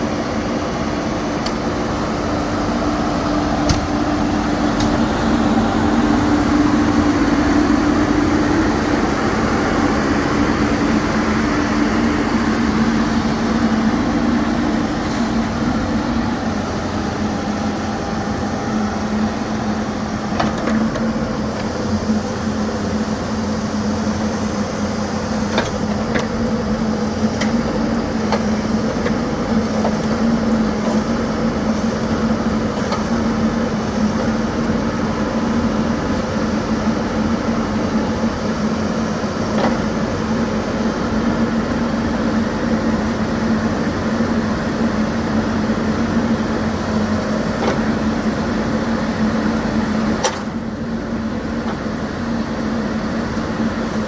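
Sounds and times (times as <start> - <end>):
backhoe diesel engine running: 0.0 - 54.0.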